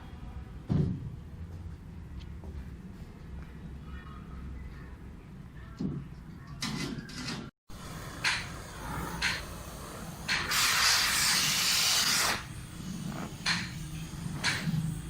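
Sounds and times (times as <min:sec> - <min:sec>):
gas hissing: 0:07.8 - 0:15.0.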